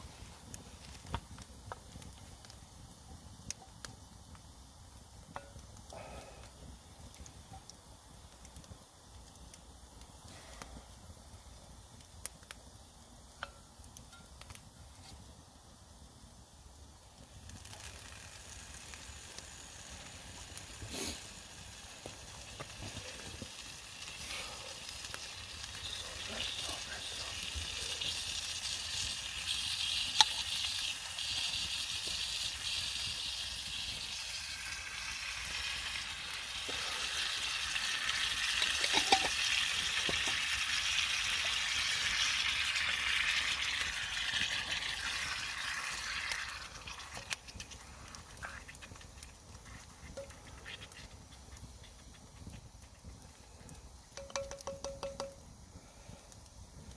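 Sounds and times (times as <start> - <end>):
food sizzling in a frying pan: 17.0 - 53.0.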